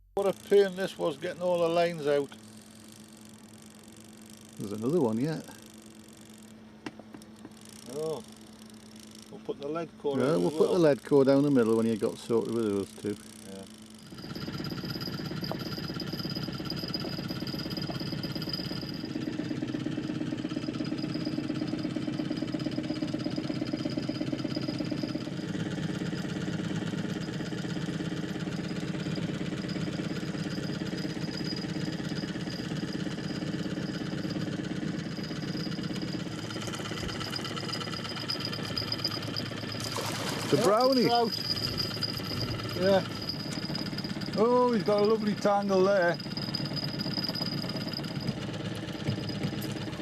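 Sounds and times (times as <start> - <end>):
boat motor running: 7.0 - 50.0.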